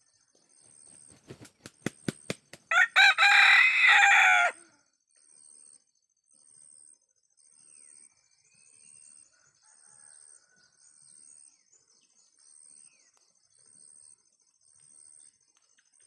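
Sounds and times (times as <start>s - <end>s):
faint rooster crowing: 2.7s - 4.8s, 9.2s - 11.2s.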